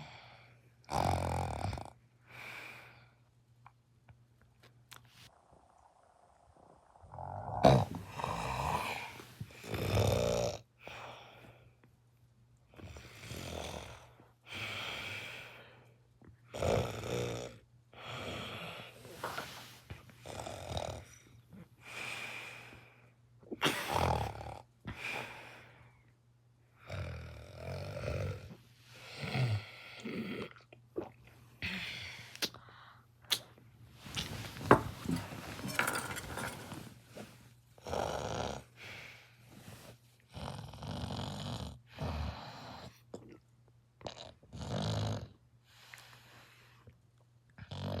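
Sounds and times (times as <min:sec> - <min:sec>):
person snoring: 0:00.9 - 0:02.0, 0:05.4 - 0:11.0, 0:20.2 - 0:21.2.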